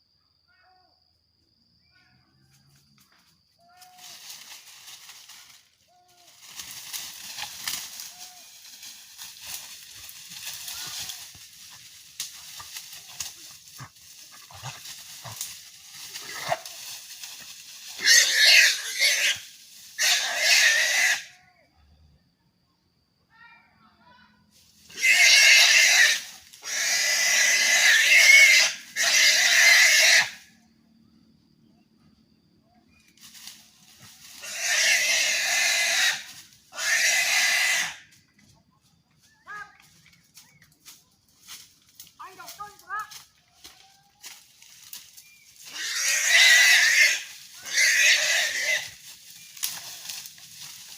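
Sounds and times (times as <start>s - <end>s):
wild boar squealing: 17.9s - 21.3s, 24.9s - 30.4s, 34.3s - 38.1s, 45.6s - 49.0s.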